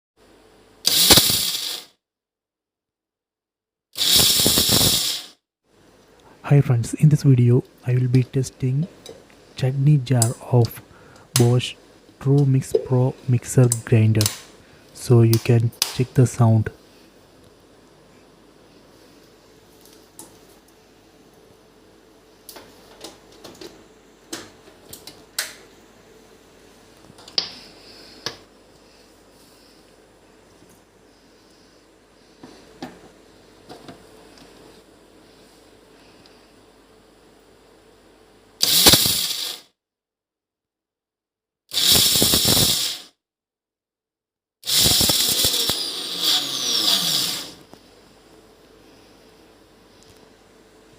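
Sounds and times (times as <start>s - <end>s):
mixer grinder whining: 0.9s - 1.9s, 38.6s - 39.6s, 41.7s - 43.0s, 44.6s - 47.7s.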